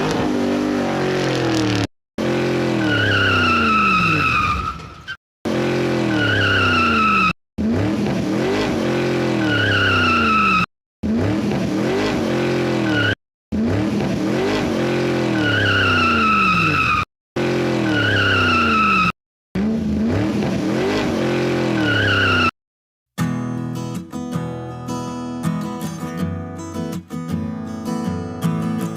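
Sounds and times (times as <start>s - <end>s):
tyre squeal: 2.8s - 5.2s, 6.1s - 7.4s, 15.3s - 17.1s
car engine revving: 5.5s - 22.5s.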